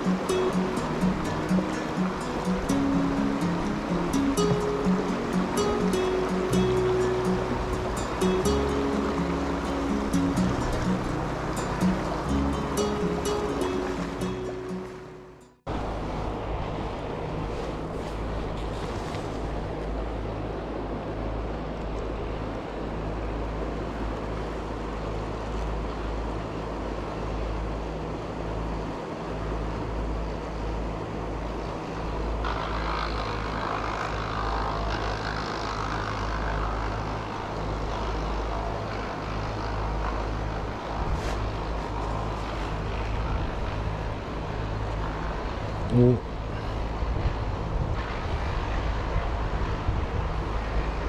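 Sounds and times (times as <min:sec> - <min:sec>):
stream rushing over rocks: 0:00.0 - 0:19.8.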